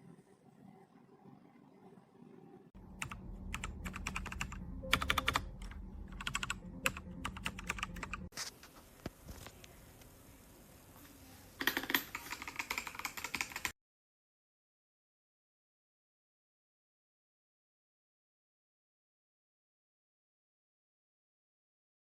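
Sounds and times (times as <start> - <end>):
mechanical keyboard typing: 3.0 - 8.3, 11.6 - 13.7.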